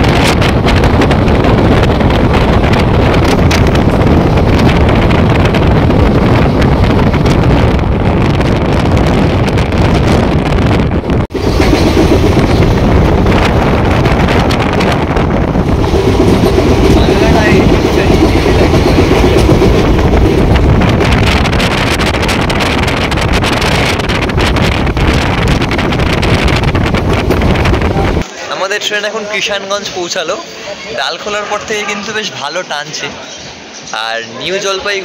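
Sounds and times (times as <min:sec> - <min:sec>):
train rumble: 0:00.0 - 0:28.3
wind on microphone: 0:00.0 - 0:28.3.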